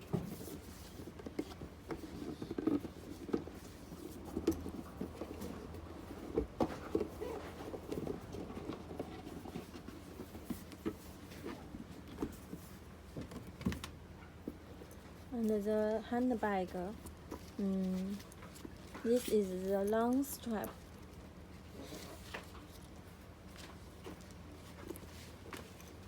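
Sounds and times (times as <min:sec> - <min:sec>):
packaging rustling and scraping: 0:00.2 - 0:12.9.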